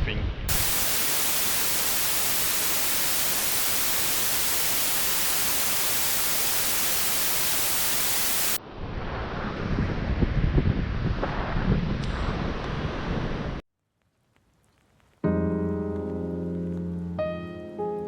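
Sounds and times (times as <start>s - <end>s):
static hiss: 0.5s - 8.6s
wind rumbling on microphone: 0.5s - 13.6s.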